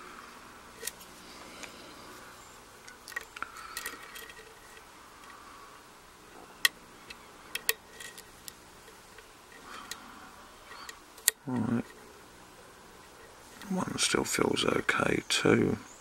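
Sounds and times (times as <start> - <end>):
lock pick scraping: 2.9 - 5.4, 6.6 - 10.0
sharp metallic clicks: 10.7 - 12.0.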